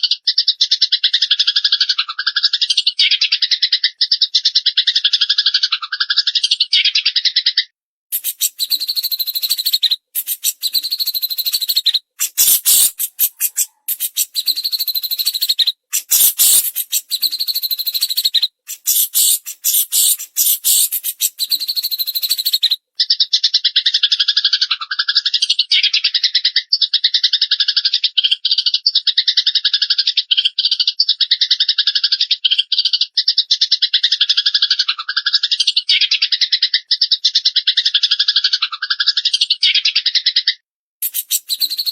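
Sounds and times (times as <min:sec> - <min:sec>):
birds chattering and trilling: 0:00.0 - 0:27.4, 0:32.2 - 0:41.9.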